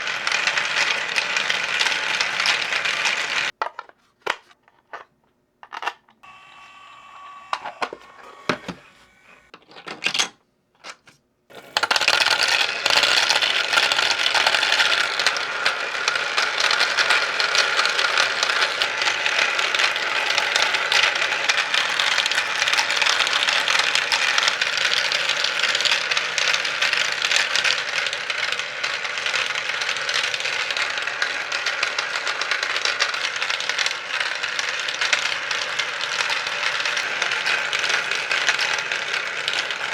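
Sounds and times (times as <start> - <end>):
marbles clattering through plastic track: 0.0 - 3.5, 11.5 - 39.9.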